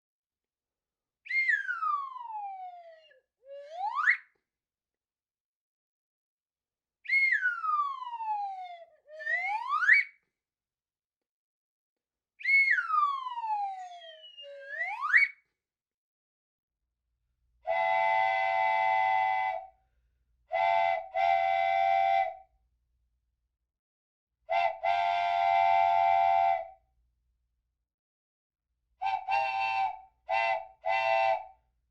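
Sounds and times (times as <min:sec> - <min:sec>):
whistle gliding in pitch: 0:01.3 - 0:04.4, 0:07.1 - 0:10.2, 0:12.4 - 0:15.5, 0:17.7 - 0:19.8, 0:20.6 - 0:22.5, 0:24.5 - 0:26.8, 0:29.0 - 0:31.6.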